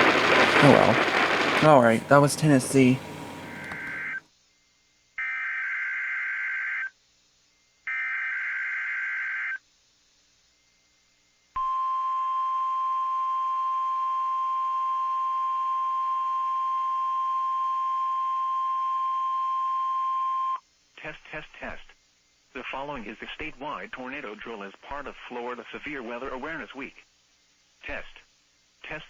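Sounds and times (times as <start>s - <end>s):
steady warning alarm tone: 1.0s - 4.2s.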